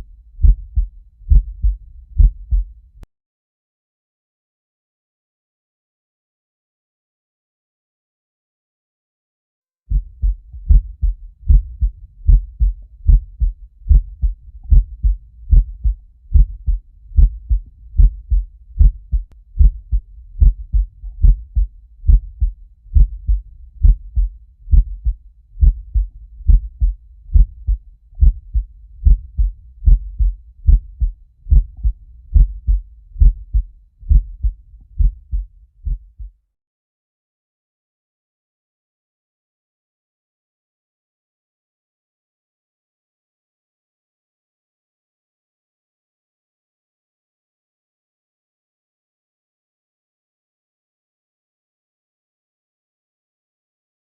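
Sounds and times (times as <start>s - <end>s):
heartbeat thumps: 0.0s - 2.7s, 9.9s - 36.3s.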